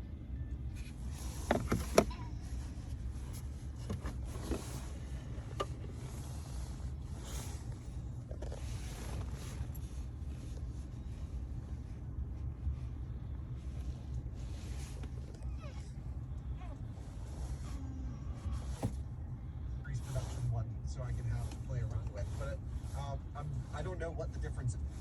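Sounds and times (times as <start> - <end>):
low hum inside truck cabin: 0.0 - 25.0
rustles of handling: 0.7 - 19.3.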